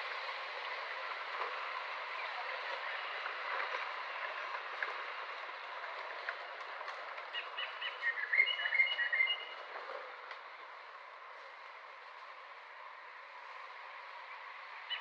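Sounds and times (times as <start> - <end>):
outdoor background hiss: 0.0 - 15.0.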